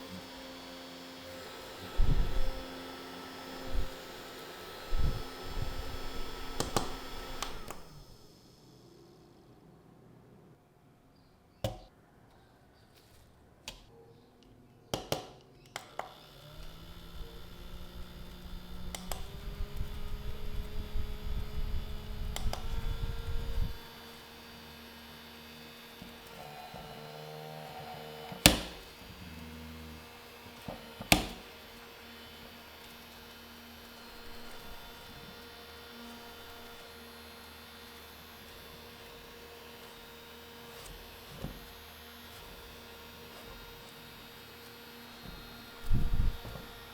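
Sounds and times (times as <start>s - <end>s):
desk fan motor humming: 0.0s - 9.2s, 16.0s - 46.9s
fan switch clicks: 4.9s - 8.1s, 18.8s - 21.4s, 22.1s - 23.8s, 28.4s - 29.0s, 30.6s - 31.5s.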